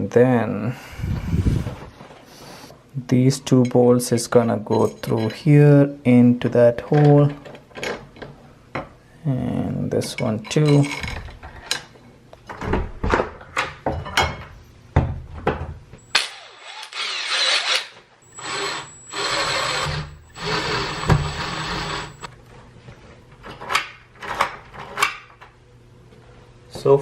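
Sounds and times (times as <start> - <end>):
cordless drill whining: 16.0 - 22.3.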